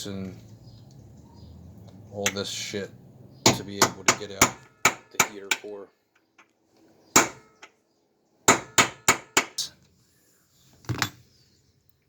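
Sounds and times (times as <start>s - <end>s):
hammer striking metal: 3.5s - 5.7s, 7.2s - 7.7s.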